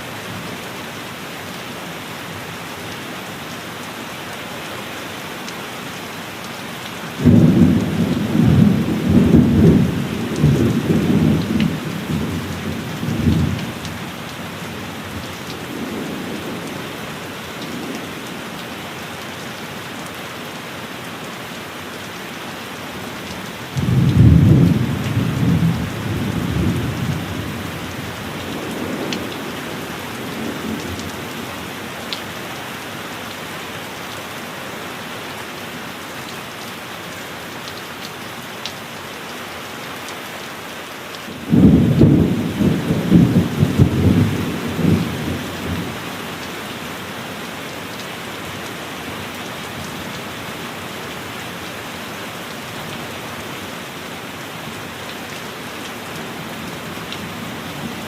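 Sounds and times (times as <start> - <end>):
heavy rain hissing: 0.0 - 37.6.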